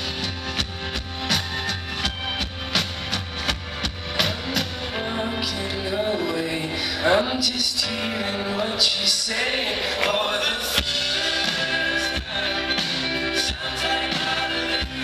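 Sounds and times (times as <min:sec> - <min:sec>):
live band playing: 0:00.0 - 0:15.0
person singing: 0:04.2 - 0:15.0.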